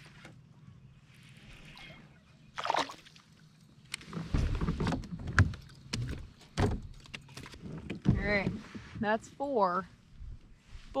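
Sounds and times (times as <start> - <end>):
water splashing: 2.5 - 3.4.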